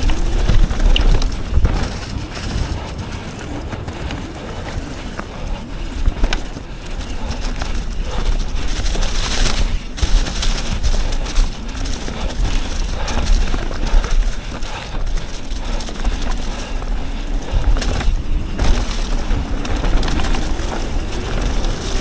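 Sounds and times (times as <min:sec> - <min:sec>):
bike clicks and knocks: 0:00.0 - 0:22.0
bike tyres rolling on dirt: 0:00.0 - 0:22.0.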